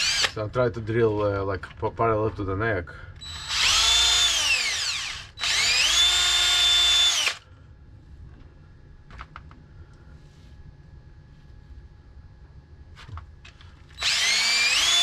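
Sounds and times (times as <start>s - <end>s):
electric drill whining: 0.0s - 0.4s, 3.2s - 7.4s, 13.9s - 15.0s.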